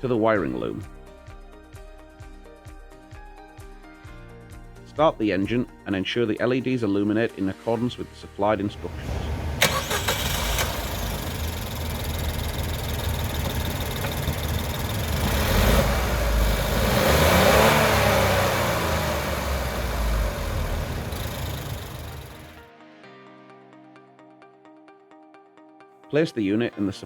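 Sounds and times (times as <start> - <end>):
car engine starting and running: 8.6 - 22.6.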